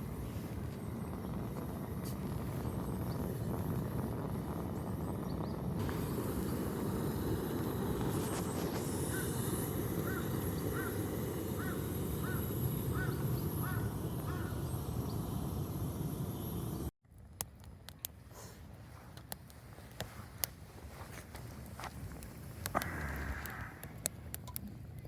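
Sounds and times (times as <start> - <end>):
bird calling: 9.0 - 9.4, 10.0 - 15.3.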